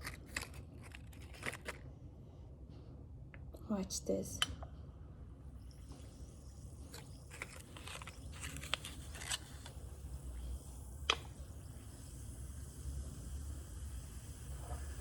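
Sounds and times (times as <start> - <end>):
handling clicks and crinkles: 0.0 - 1.9, 6.8 - 9.8
low steady hum: 0.0 - 15.0.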